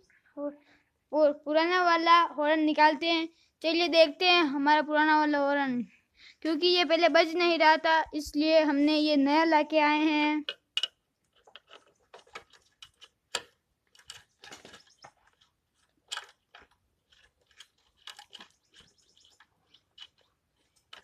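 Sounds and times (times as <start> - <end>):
hand tools clicking and tapping: 10.4 - 21.0.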